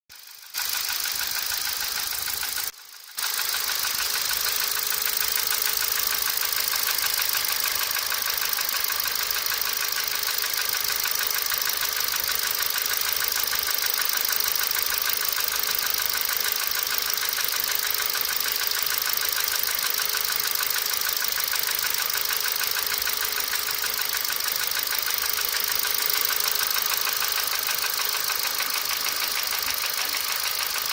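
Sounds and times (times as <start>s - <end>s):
car engine idling with ticking: 0.1s - 30.9s.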